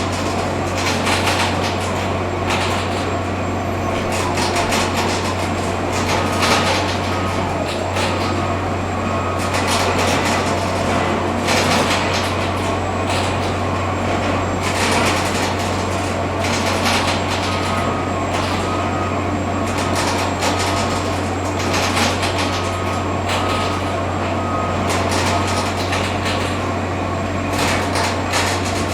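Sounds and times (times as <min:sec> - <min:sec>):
low machine drone: 0:00.0 - 0:16.4
clatter of construction work: 0:00.0 - 0:28.9.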